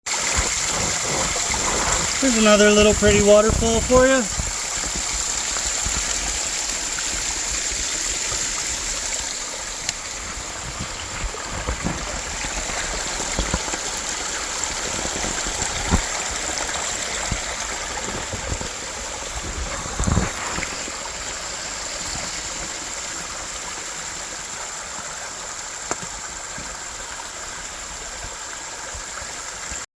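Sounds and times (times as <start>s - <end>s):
small waterfall splashing: 0.1s - 29.9s.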